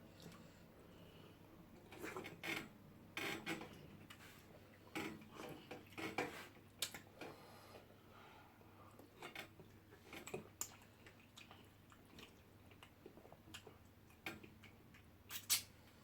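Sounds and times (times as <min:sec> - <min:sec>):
chewing and food handling clicks: 0:06.8 - 0:07.1, 0:09.0 - 0:16.0.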